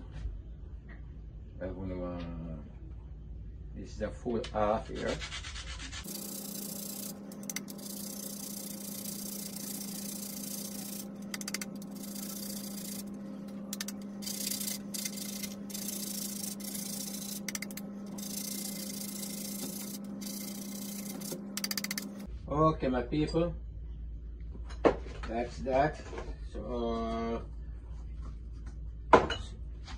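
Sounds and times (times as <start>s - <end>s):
steady low hum: 0.0s - 24.8s
nutmeg scraping on a grater: 5.0s - 22.2s.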